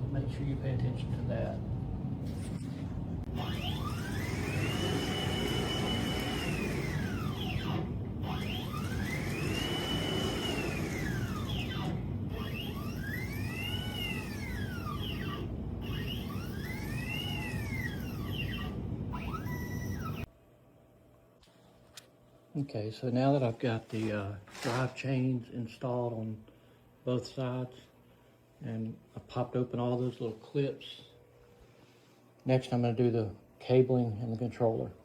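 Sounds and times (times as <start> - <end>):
stepper motors whining: 2.2 - 20.3.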